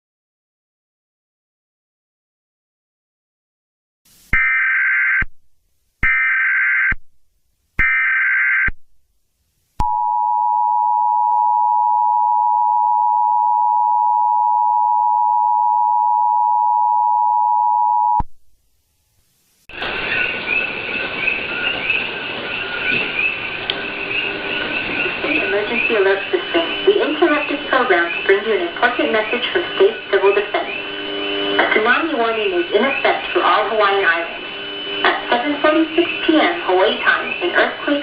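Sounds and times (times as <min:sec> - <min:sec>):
loud hissy audio: 0:18.7 - 0:38.0
screeching digital data bursts: 0:19.8 - 0:38.0
two-tone attention signal: 0:22.5 - 0:38.0.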